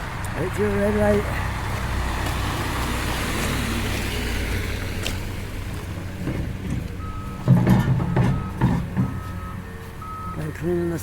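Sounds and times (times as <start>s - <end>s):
low engine rumble: 0.0s - 11.0s
tyres on wet road: 0.0s - 11.0s
vehicle reversing beep: 6.0s - 11.0s.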